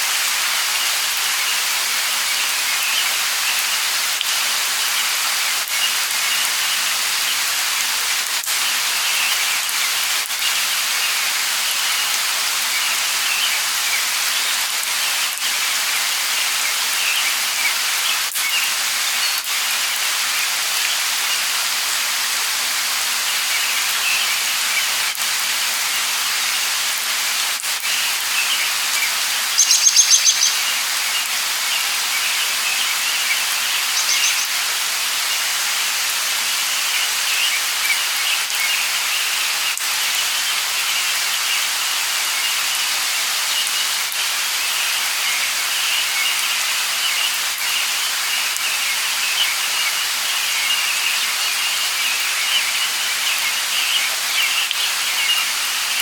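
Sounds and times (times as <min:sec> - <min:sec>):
light rain hissing: 0:00.0 - 0:56.0
small birds chirping: 0:23.2 - 0:25.1, 0:27.8 - 0:35.8, 0:44.6 - 0:56.0
bird trill: 0:29.6 - 0:30.8, 0:32.8 - 0:34.6.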